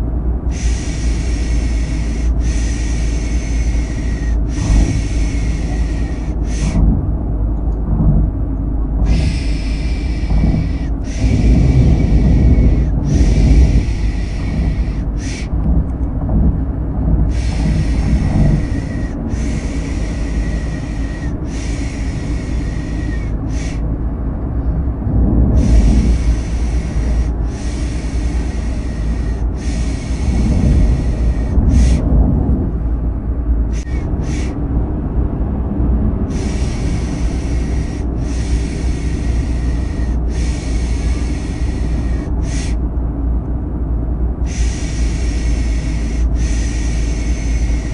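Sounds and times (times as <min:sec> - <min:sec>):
car ride rumble: 0:00.0 - 0:47.9
person shushing: 0:09.0 - 0:15.6.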